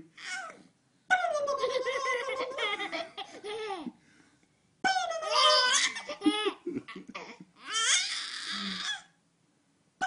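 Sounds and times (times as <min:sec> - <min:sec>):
baby laughing: 0:00.2 - 0:04.0, 0:04.9 - 0:08.3.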